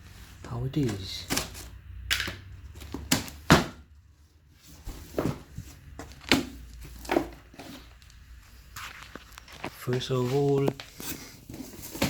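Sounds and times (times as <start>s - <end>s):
packaging knocks and bumps: 0.8s - 3.8s, 4.9s - 8.0s, 10.6s - 12.0s.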